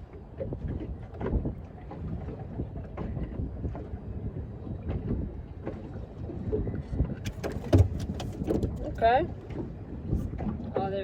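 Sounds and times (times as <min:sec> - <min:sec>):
wind buffeting microphone: 0:00.0 - 0:11.0
handling knocks and clicks: 0:07.2 - 0:08.9.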